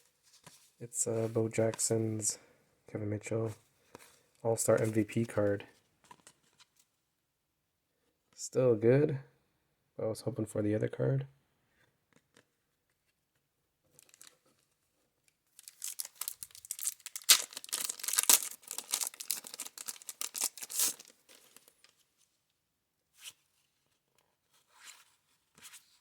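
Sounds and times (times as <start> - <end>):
waxed paper wrapper tearing and crinkling: 14.0 - 14.4, 15.6 - 21.7
cards rustling: 15.6 - 22.0.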